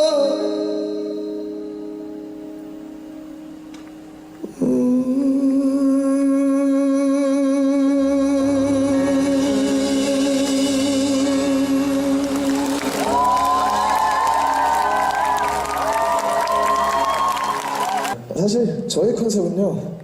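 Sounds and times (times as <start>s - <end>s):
man singing a long note: 0.0s - 2.2s, 4.4s - 13.8s
band playing a ballad: 3.7s - 18.2s
low bass: 7.6s - 13.7s.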